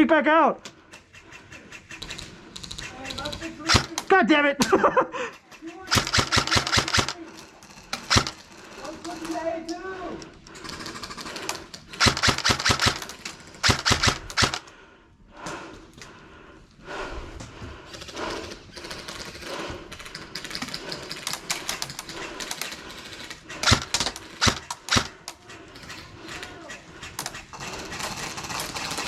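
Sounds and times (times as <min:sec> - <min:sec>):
airsoft guns firing bursts: 0:01.0 - 0:04.2, 0:05.4 - 0:09.0, 0:10.6 - 0:14.6, 0:17.9 - 0:29.0.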